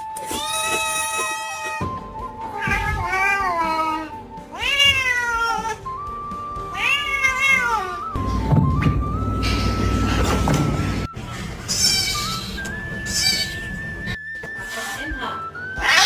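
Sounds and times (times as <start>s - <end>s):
background music: 0.0s - 16.0s
cat meowing: 2.5s - 5.8s, 6.7s - 8.0s, 11.7s - 12.5s, 13.1s - 13.6s, 15.8s - 16.0s.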